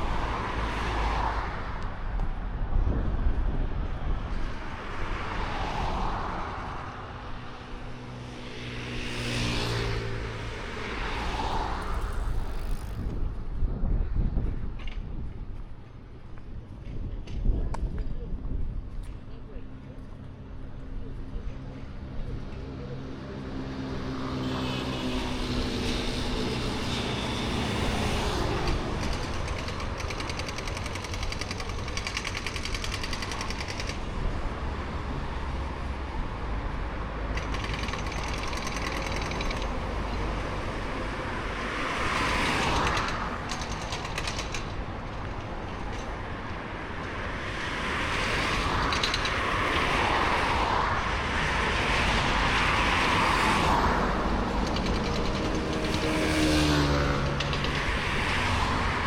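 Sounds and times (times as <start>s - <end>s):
vehicles passing: 0.0s - 59.0s
fast machine-like rattle: 29.0s - 34.1s, 37.3s - 39.8s, 42.8s - 44.7s.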